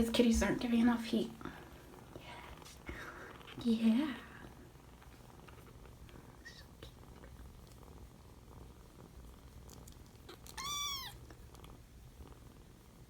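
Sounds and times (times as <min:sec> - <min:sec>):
kittens purring: 0:00.0 - 0:13.0
kitten mewing: 0:10.3 - 0:11.2.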